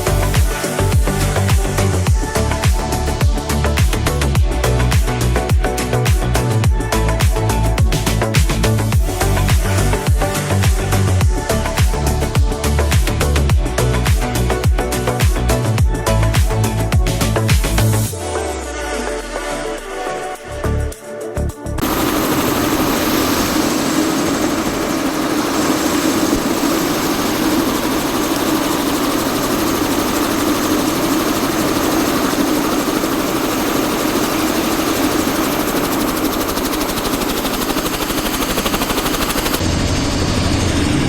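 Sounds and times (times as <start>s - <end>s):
helicopter rotor noise: 0.0s - 18.1s, 21.8s - 41.0s.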